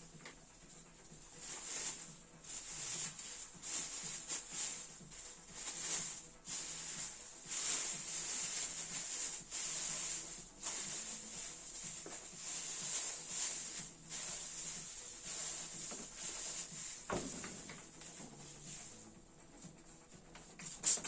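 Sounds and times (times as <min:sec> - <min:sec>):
spray foam can hissing: 0:02.6 - 0:17.3, 0:20.6 - 0:21.0.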